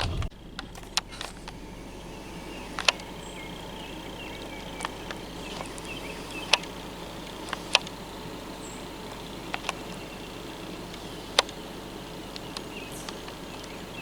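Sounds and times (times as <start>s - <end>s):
sharp clicks: 0.0s - 1.6s, 2.4s - 3.2s, 4.4s - 8.4s, 9.0s - 11.7s
faint chirping: 0.0s - 14.0s.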